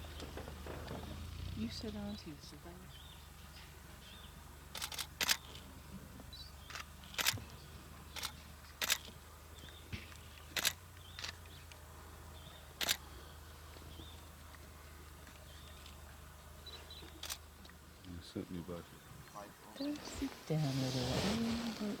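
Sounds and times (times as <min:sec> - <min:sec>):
camera shutters clicking: 0:04.8 - 0:05.5, 0:06.7 - 0:07.5, 0:08.2 - 0:09.1, 0:10.6 - 0:11.4, 0:12.8 - 0:13.0, 0:17.2 - 0:17.4.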